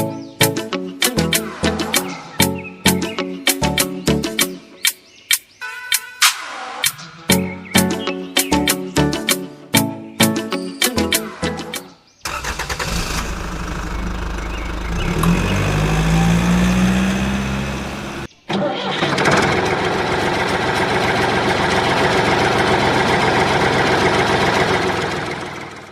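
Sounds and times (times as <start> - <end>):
engine running and revving: 12.3 - 18.3, 19.0 - 25.9.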